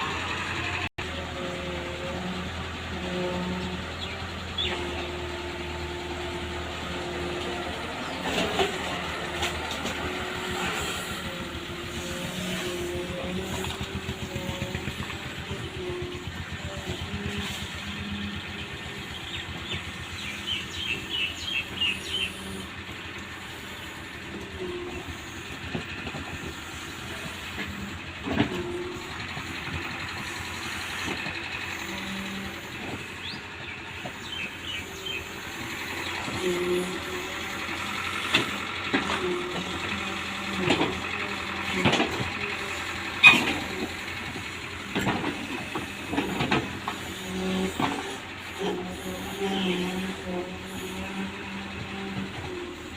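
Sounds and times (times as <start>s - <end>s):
excavator running: 0.0s - 52.9s
knocks and clunks: 43.2s - 48.8s.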